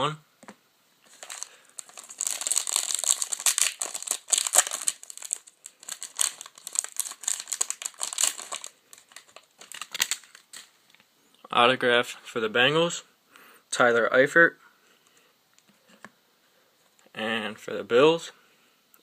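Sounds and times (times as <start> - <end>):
plastic wrapper crinkling and tearing: 1.1 - 10.8.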